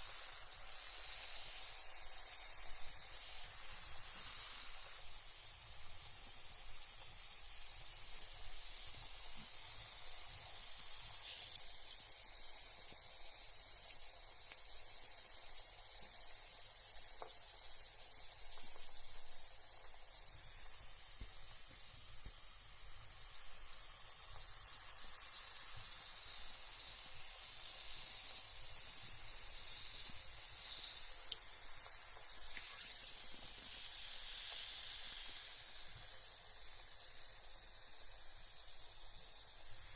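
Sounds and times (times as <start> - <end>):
bath bomb fizzing: 0.0 - 39.9
faint ticks: 30.1 - 32.9.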